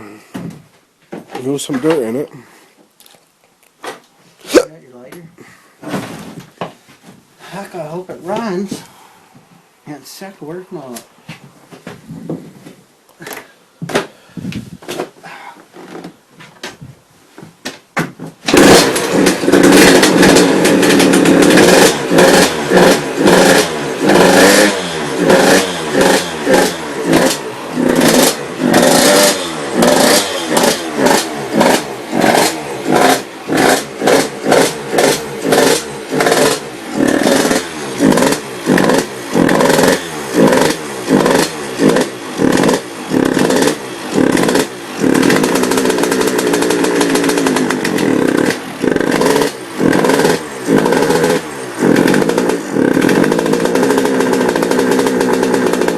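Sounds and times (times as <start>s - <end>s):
dirt bike engine revving: 18.4s - 55.9s.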